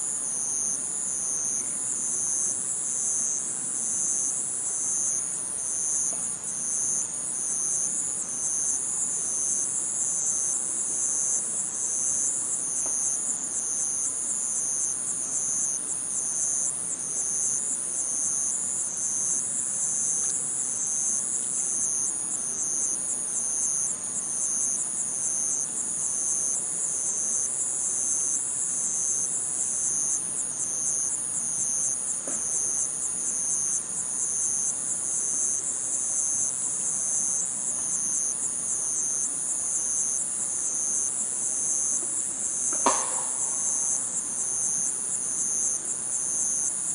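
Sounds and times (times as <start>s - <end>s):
insects chirping: 0.0s - 46.9s
faint knocks: 42.7s - 43.9s.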